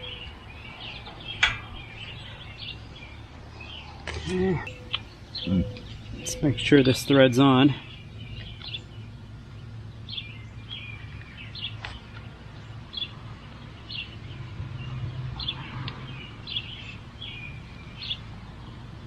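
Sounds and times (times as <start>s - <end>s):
small bird chirping: 0.0s - 14.2s.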